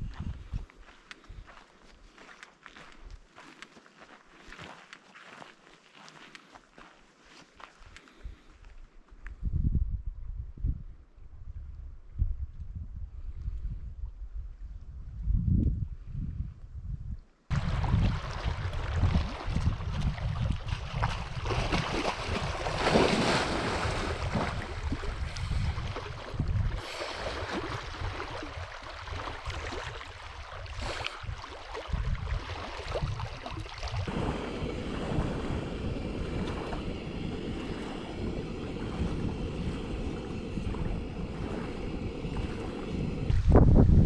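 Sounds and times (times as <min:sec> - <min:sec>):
wind buffeting microphone: 0:00.0 - 0:01.6, 0:09.2 - 0:44.0
water lapping and splashing: 0:17.5 - 0:44.0.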